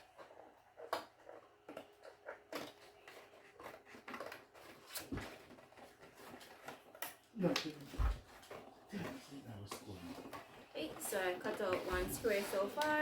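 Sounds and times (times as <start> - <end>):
paper rustling: 7.9 - 13.0.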